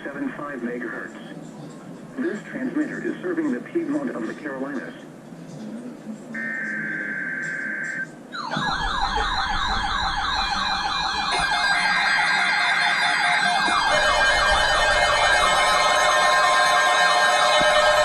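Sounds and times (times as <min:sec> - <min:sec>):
steady alarm tone: 0:06.4 - 0:18.0
warbling alert alarms: 0:06.4 - 0:18.0.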